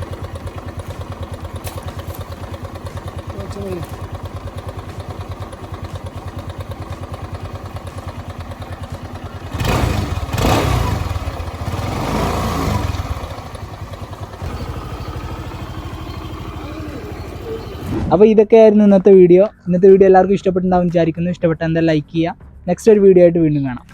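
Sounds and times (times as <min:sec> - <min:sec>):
scooter engine idling and revving: 0:00.0 - 0:18.2.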